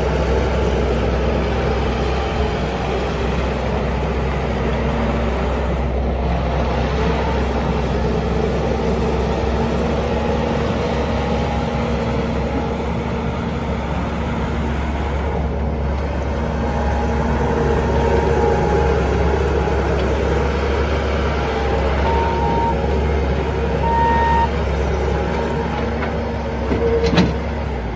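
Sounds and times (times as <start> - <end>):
diesel engine running: 0.0 - 27.9
brief high tones: 21.9 - 22.9, 23.8 - 24.6.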